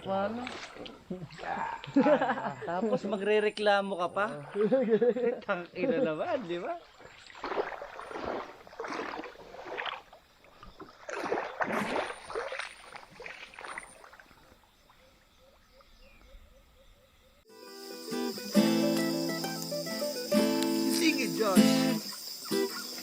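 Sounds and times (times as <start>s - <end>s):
water splashing in river: 0.0s - 2.1s, 6.1s - 15.6s
faint water trickling: 0.0s - 16.4s.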